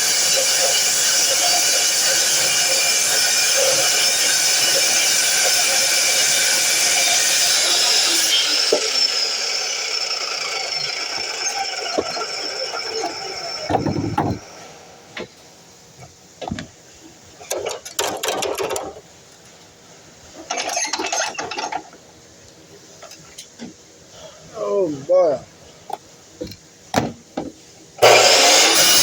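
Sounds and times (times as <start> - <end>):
miter saw whine winding down: 7.8 - 14.5
clattering and knocking: 13.7 - 14.4
heavy knock: 13.7 - 14.4.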